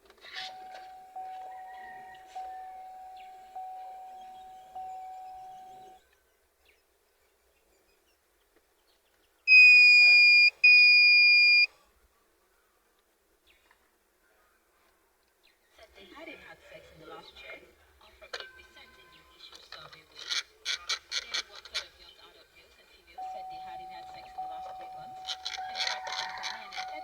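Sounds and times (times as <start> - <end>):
car warning chime: 0.2 - 6.0, 9.5 - 11.7, 23.2 - 27.0
high-pitched beeps: 9.5 - 11.7.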